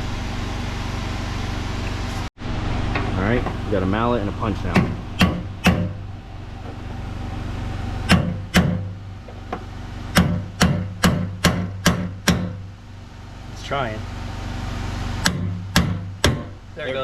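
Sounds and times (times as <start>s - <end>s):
steady low hum: 0.0s - 17.0s
mallet striking metal punch: 4.7s - 6.0s, 8.1s - 9.0s, 10.1s - 12.6s, 15.2s - 16.6s.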